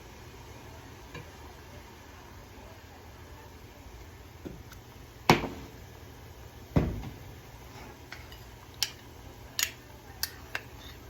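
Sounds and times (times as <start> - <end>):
utensils clinking against dishes: 9.6 - 11.0.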